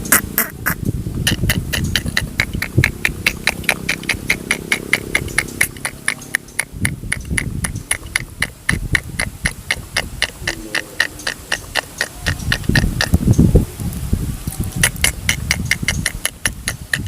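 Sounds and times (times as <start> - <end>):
rapid even ticking: 0.0 - 13.5, 14.8 - 17.0
low rumbling: 0.0 - 17.0.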